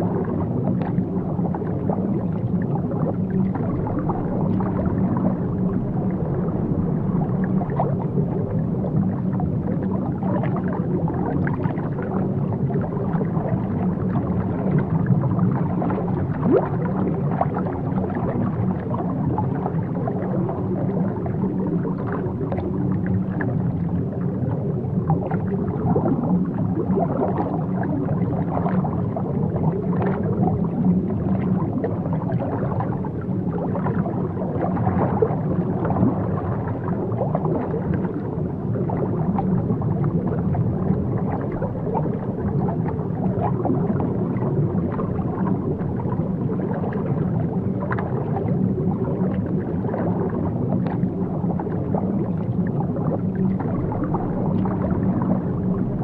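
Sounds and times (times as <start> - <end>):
muffled underwater wash: 0.0 - 56.0
small clicks and gurgles: 0.1 - 56.0.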